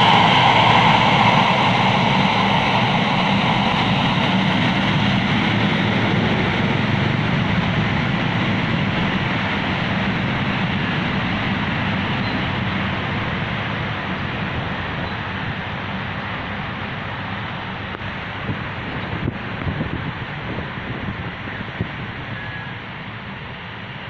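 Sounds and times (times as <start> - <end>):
turboprop aircraft engines running: 0.0 - 24.0.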